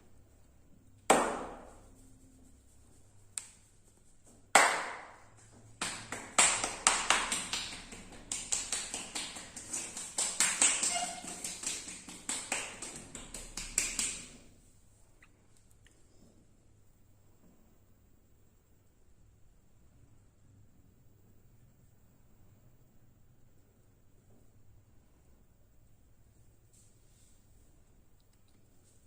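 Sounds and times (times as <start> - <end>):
palms slapping body: 1.0 - 1.9, 4.3 - 14.4.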